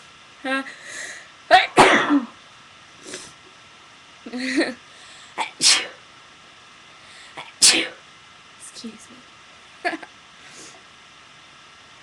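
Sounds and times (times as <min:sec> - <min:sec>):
person sneezing: 0:01.5 - 0:02.4, 0:05.4 - 0:06.0, 0:07.4 - 0:08.0.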